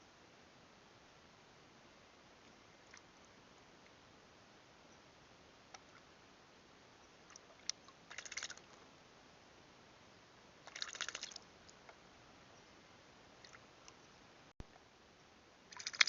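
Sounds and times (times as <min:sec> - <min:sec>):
bird splashing in water: 0:07.3 - 0:08.7, 0:10.6 - 0:11.4, 0:15.7 - 0:16.0.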